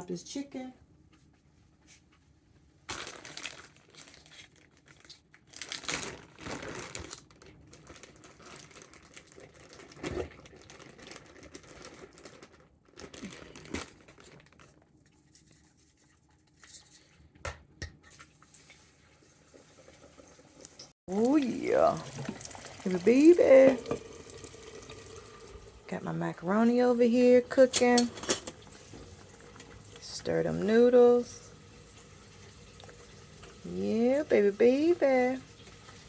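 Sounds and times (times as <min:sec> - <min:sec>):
oil sizzling and crackling: 0:18.4 - 0:26.0, 0:27.0 - 0:36.0.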